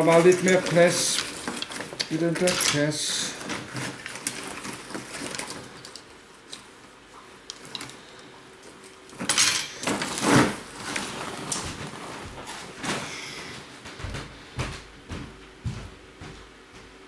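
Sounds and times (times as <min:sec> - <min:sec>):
rustling: 0:00.0 - 0:06.1, 0:08.6 - 0:13.2.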